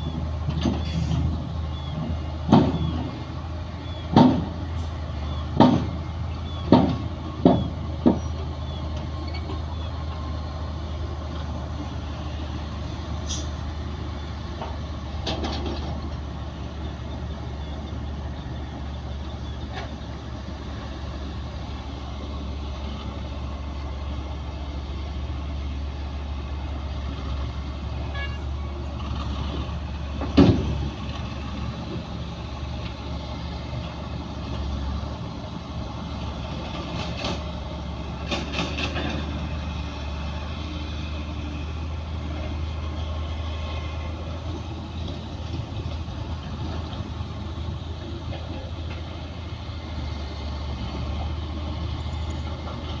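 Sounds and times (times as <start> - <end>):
bulldozer diesel engine drone: 0.0 - 53.0.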